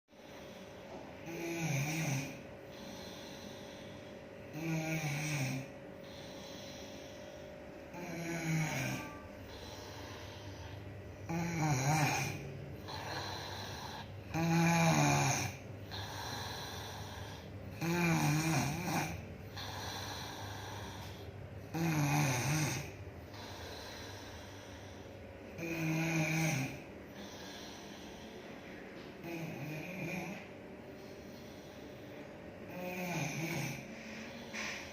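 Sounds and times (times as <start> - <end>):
quiet breathing: 0.1 - 34.9
woman snoring: 0.2 - 28.4, 29.2 - 30.5, 31.3 - 34.9.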